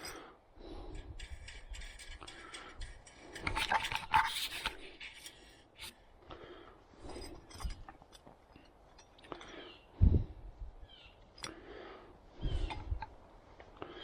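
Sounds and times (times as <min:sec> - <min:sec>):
hand tool scraping metal: 0:00.0 - 0:00.2, 0:00.8 - 0:06.0.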